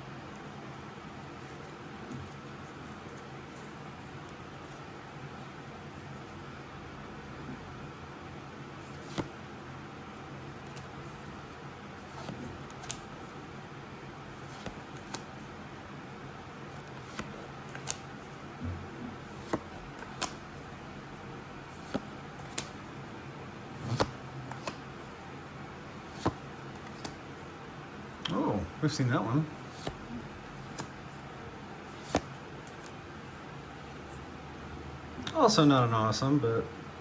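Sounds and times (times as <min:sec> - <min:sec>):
steady low hum: 0:00.0 - 0:37.0
trading cards clicking and tapping: 0:16.8 - 0:18.0, 0:19.4 - 0:20.4, 0:21.8 - 0:22.8, 0:26.0 - 0:27.2, 0:31.9 - 0:32.9.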